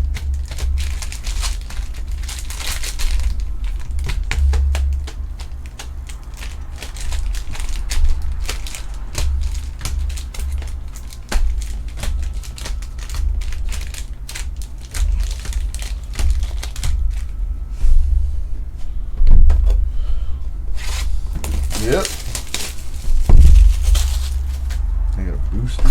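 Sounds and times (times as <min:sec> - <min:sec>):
cards clicking and rustling: 0:00.0 - 0:18.1, 0:20.7 - 0:25.9
handling bumps on a table: 0:00.0 - 0:19.9
wrappers crinkling: 0:00.0 - 0:25.9.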